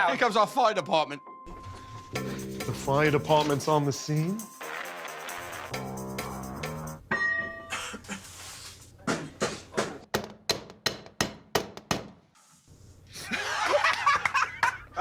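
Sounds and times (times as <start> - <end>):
music: 0.0 - 7.0.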